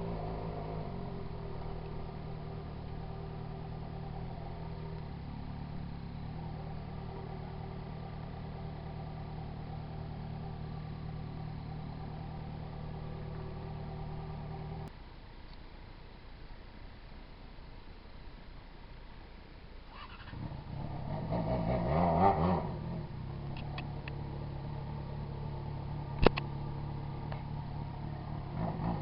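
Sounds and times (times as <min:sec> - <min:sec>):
motorcycle engine idling: 0:00.0 - 0:14.9, 0:22.6 - 0:29.0.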